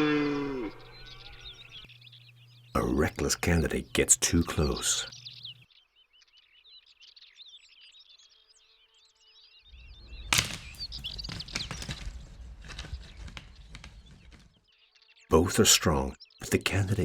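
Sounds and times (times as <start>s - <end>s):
small birds chirping: 0.0s - 17.0s
deer scuffling: 9.8s - 14.6s
antlers knocking: 10.0s - 14.5s.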